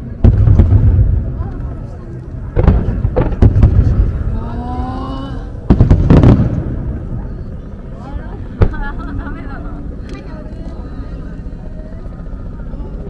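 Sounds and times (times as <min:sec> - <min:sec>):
low rumbling echo: 0:00.0 - 0:13.0
fireworks bursting: 0:00.2 - 0:04.4, 0:05.6 - 0:07.5.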